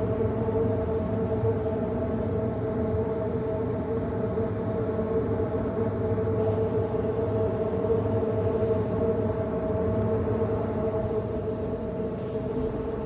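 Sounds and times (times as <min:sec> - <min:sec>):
steady machine hum: 0:00.0 - 0:13.0.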